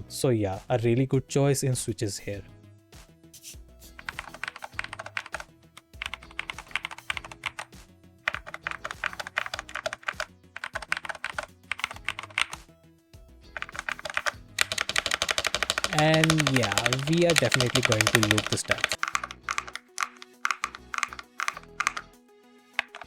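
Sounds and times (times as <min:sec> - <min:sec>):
keyboard typing: 0:03.9 - 0:12.6, 0:13.5 - 0:22.1, 0:22.8 - 0:23.0.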